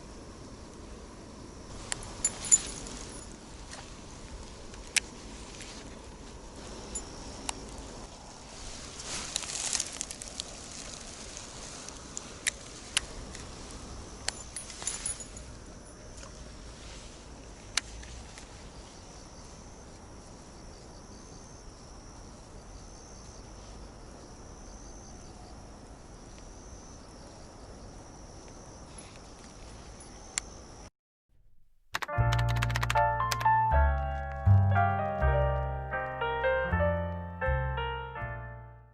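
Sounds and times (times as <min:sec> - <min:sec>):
insects chirping trill: 0:00.0 - 0:03.6, 0:06.6 - 0:08.1, 0:09.1 - 0:30.9
short rustle: 0:01.7 - 0:19.6
sharp clicks: 0:31.9 - 0:33.5.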